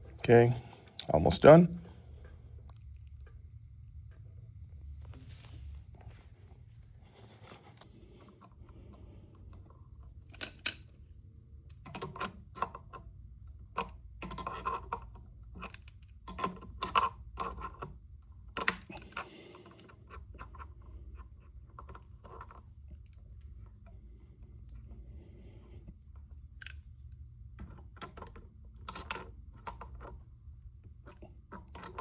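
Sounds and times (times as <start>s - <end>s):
metallic clicks of cable terminals: 10.2s - 10.9s, 13.7s - 18.0s
steady low hum: 18.0s - 32.0s.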